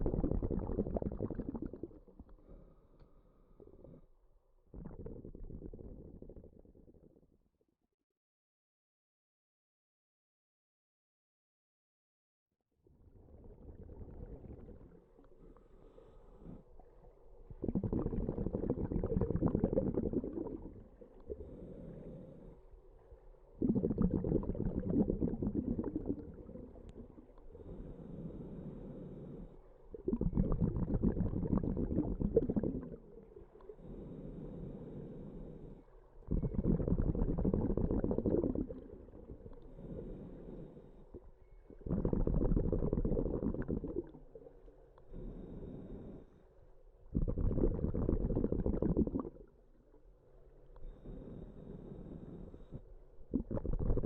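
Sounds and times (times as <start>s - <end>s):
diver exhaling bubbles underwater: 0.0s - 2.7s, 4.7s - 7.0s, 17.5s - 21.8s, 23.6s - 27.8s, 29.9s - 34.2s, 36.3s - 40.3s, 41.1s - 44.5s, 47.1s - 49.6s, 53.3s - 54.0s.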